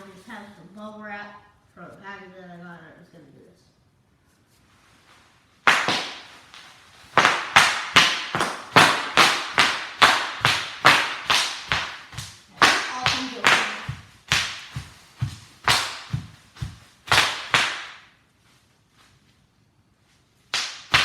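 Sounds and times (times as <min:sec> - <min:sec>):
bubble wrap popping: 0:05.0 - 0:18.6, 0:20.4 - 0:21.0.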